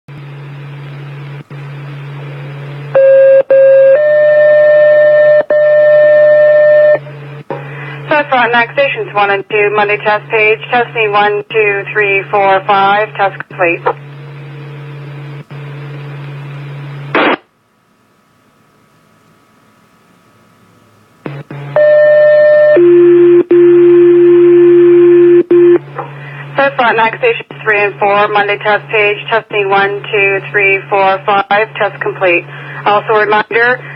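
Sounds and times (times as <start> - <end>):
radio hiss: 17.0 - 17.5.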